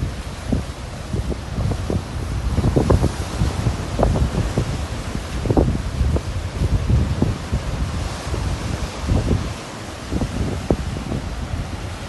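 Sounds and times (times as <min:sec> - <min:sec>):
sea waves breaking on shore: 0:00.0 - 0:12.0
wind buffeting microphone: 0:00.0 - 0:12.0.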